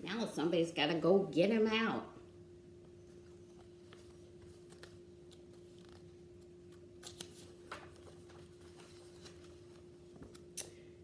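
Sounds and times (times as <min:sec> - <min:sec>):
faint steady hum: 0:00.0 - 0:11.0
book pages rustling and turning: 0:03.1 - 0:10.6.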